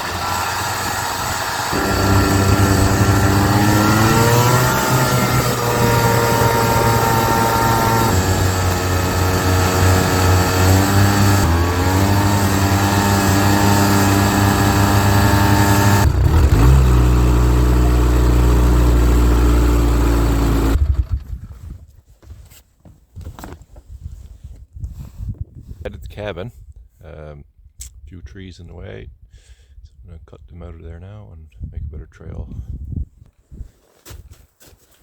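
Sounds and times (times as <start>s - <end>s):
snowmobile engine running: 0.0s - 21.2s.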